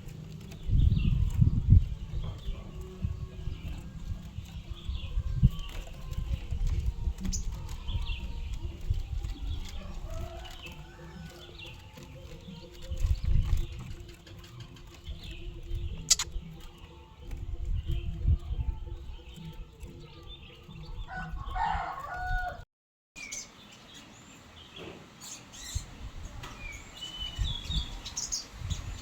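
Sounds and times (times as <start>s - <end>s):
chickens clucking: 0.0s - 22.6s
songbird chirping: 0.0s - 22.6s, 23.2s - 29.0s
sharp click: 16.1s - 16.4s.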